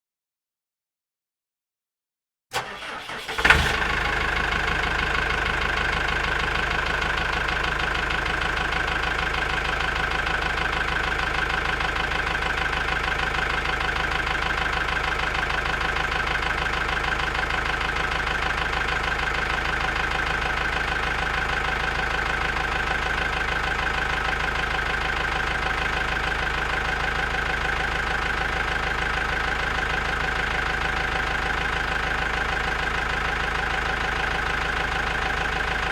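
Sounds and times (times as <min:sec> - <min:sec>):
tractor engine starting and idling: 0:02.5 - 0:35.9.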